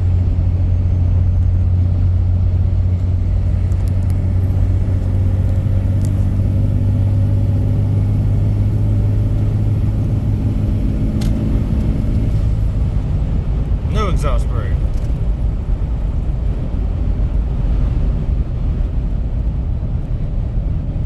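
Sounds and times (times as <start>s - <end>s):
vehicle engine humming: 0.0s - 21.0s.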